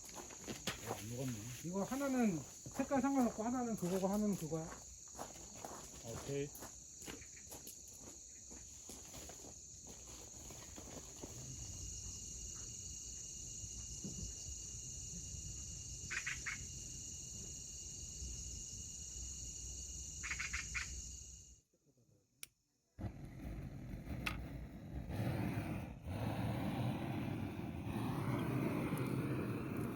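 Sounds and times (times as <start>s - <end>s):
high-pitched insect chorus: 0.0s - 21.6s
rapid chirping bursts: 20.2s - 21.0s.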